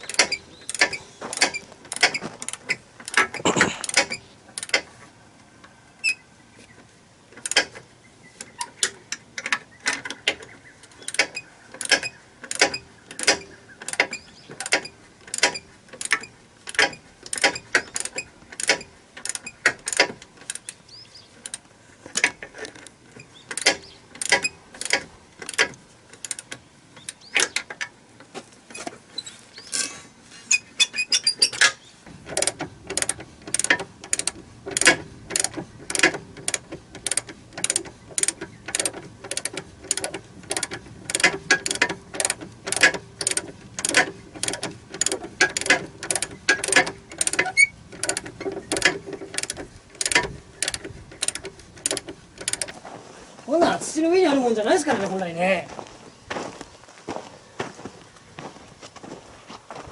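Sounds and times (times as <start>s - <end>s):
ratchet wrench clicking: 23.5s - 26.6s, 32.3s - 52.7s.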